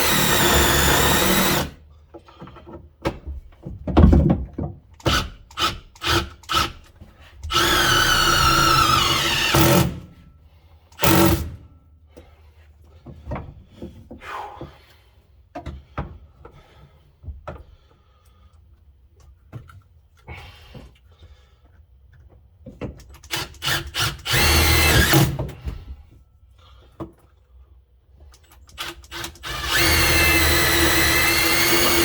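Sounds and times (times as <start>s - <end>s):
power drill running: 0.0s - 1.8s, 7.5s - 10.1s, 11.0s - 11.6s, 23.3s - 25.4s, 29.1s - 32.0s
tools clicking and knocking: 22.1s - 24.0s, 28.2s - 30.0s.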